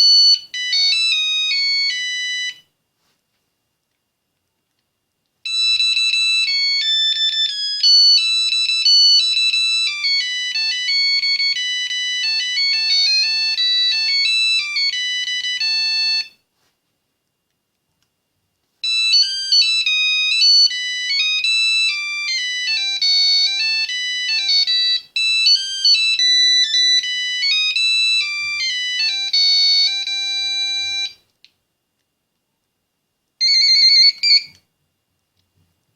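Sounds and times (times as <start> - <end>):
phone ringtone melody: 0.0 - 2.7, 5.5 - 16.4, 18.8 - 31.2, 33.4 - 34.6.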